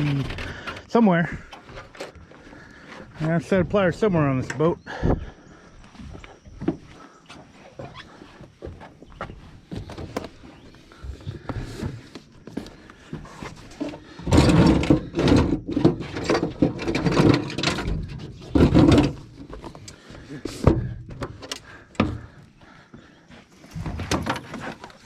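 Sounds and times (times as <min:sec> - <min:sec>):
rummaging through compartments: 0:00.0 - 0:02.3, 0:09.8 - 0:22.4, 0:23.7 - 0:25.0.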